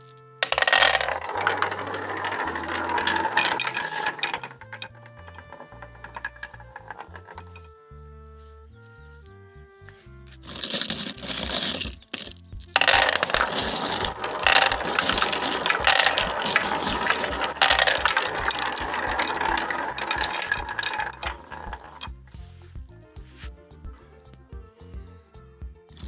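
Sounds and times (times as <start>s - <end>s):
marbles rattling down marble run: 0.0s - 7.7s, 10.4s - 22.4s.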